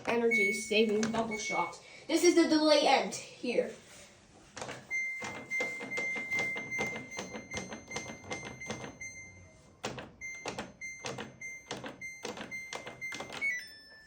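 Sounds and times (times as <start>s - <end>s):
washing machine beeps: 0.0s - 1.8s, 4.6s - 14.0s
clicks and knocks: 9.8s - 13.5s.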